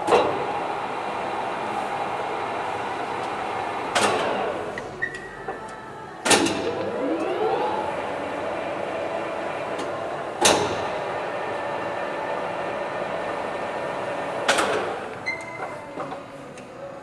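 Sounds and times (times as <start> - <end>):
lathe humming: 0.0 - 17.0
lathe clunk: 3.1 - 8.0, 9.2 - 11.2, 14.4 - 16.7.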